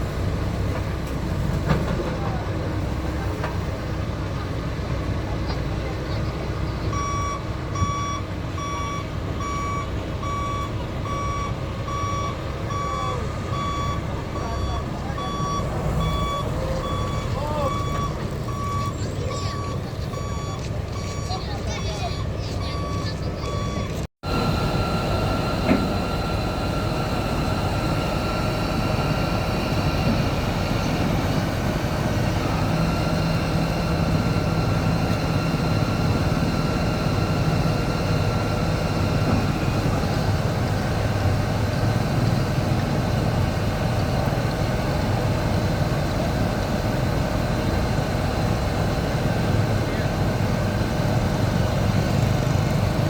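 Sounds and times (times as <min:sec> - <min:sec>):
diesel machinery engine hum: 0:00.0 - 0:53.0
high whining tones: 0:22.8 - 0:40.0.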